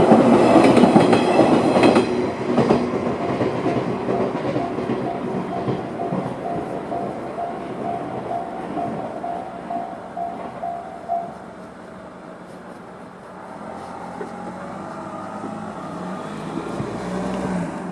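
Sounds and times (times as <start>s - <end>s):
train rumble: 0.0s - 17.9s
level crossing warning bell: 3.7s - 11.8s
vehicle engine pulling away: 13.4s - 17.9s.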